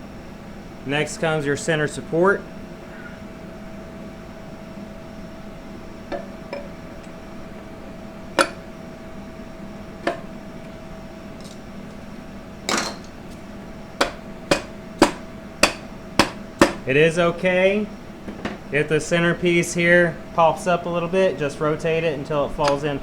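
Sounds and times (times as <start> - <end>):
sharp metal taps: 8.4 - 8.7, 14.0 - 16.8
metal parts clinking: 12.7 - 13.2.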